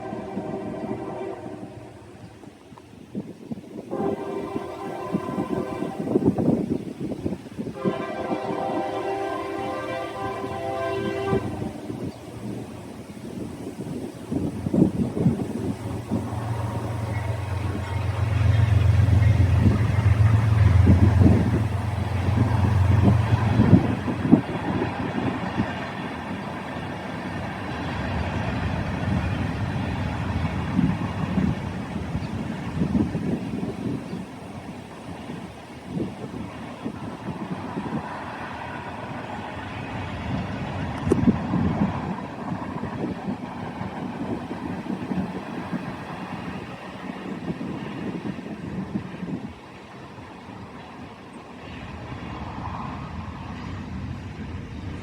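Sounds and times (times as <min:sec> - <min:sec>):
train cars rolling past: 0:00.0 - 0:55.0
train cars knocking: 0:07.8 - 0:34.1.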